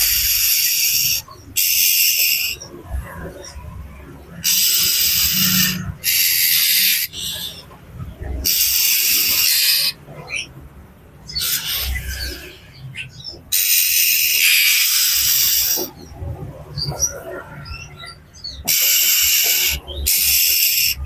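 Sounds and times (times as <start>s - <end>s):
bird harsh buzzing rasps: 0.0s - 2.6s, 4.4s - 7.6s, 8.4s - 10.0s, 11.3s - 12.5s, 13.5s - 16.0s, 18.6s - 21.0s.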